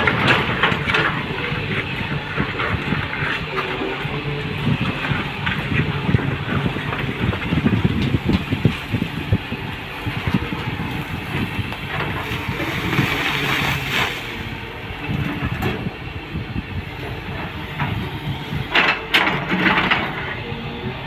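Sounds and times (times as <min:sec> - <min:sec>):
excavator diesel engine running: 0:00.0 - 0:21.0.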